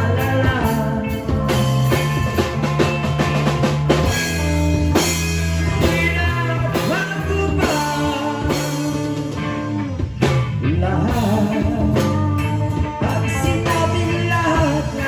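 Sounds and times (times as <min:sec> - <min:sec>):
rock band playing: 0:00.0 - 0:15.0.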